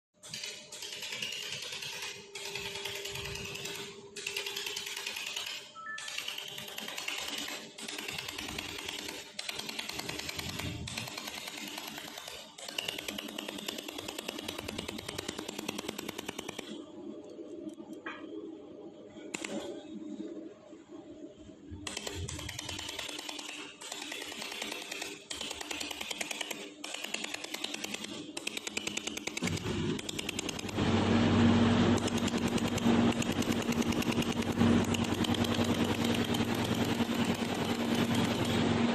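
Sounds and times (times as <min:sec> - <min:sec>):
laser welder snapping clicks: 0:19.4 - 0:19.7
low machine hum: 0:29.4 - 0:38.9.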